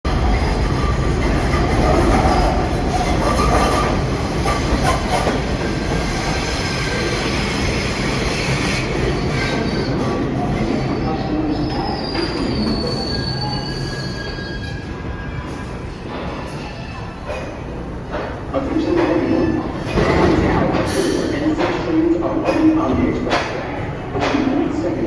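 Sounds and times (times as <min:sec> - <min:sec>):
subway train rumbling: 0:00.0 - 0:25.0
high wheel squeal: 0:11.6 - 0:15.9.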